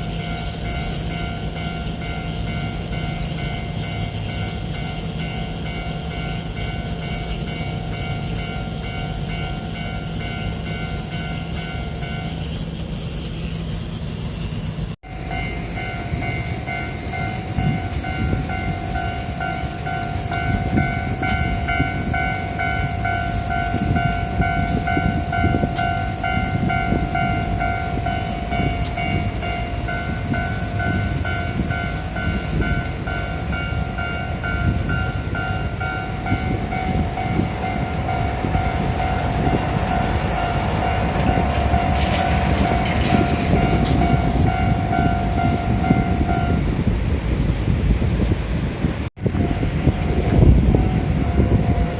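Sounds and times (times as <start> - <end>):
train rumbling past: 0.0 - 51.9
level crossing alarm ringing: 15.0 - 46.7.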